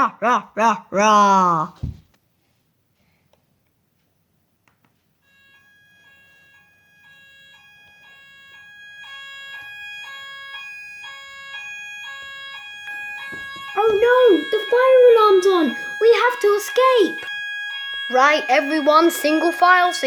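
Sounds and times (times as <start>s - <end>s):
electronic fire alarm: 5.2s - 20.0s.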